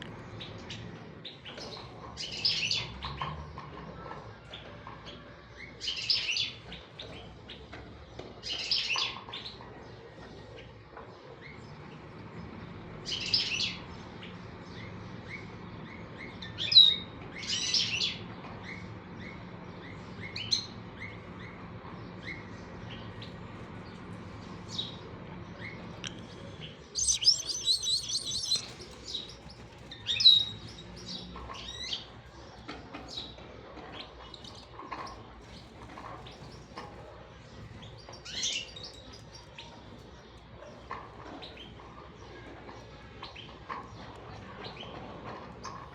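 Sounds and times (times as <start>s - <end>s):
small birds chirping: 4.5s - 45.0s.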